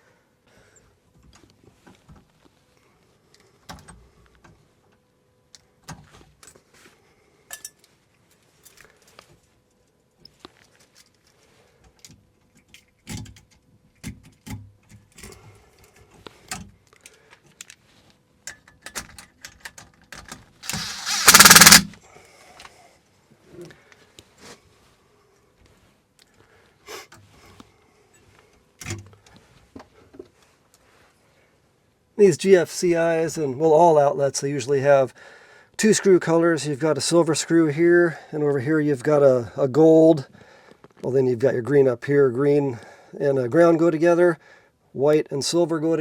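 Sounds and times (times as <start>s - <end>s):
loud rustling scrape: 20.6s - 21.8s.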